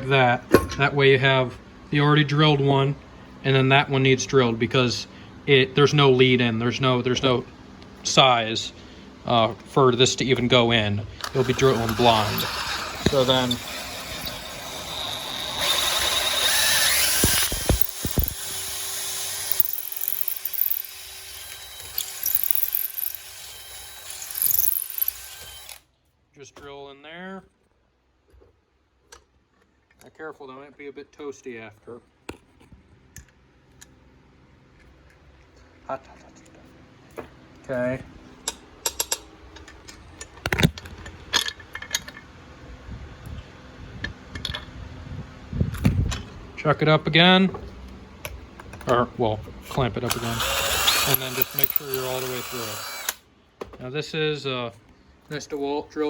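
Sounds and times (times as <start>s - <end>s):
electric drill cutting metal: 11.3s - 25.8s, 50.0s - 53.2s.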